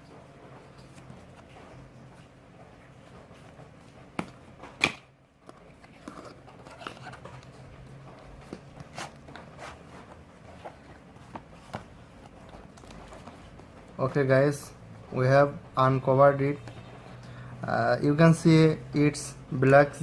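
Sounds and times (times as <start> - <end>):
packaging rustling: 5.6 - 14.0.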